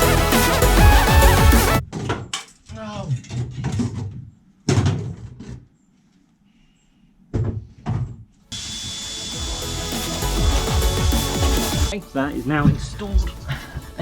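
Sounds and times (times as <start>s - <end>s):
electronic background music: 0.0s - 1.8s, 8.6s - 14.0s
parts knocking and clunking: 12.5s - 14.0s.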